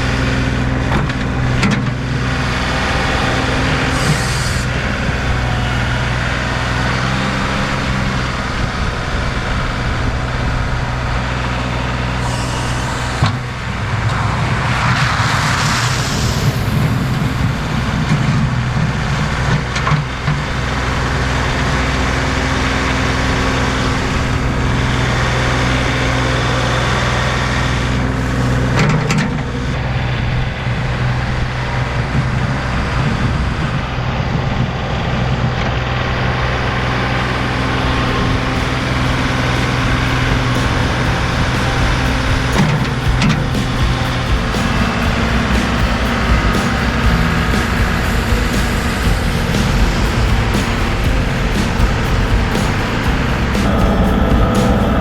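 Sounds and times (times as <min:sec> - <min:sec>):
tractor diesel engine running: 0:00.0 - 0:55.0
brief hiss: 0:12.2 - 0:18.3.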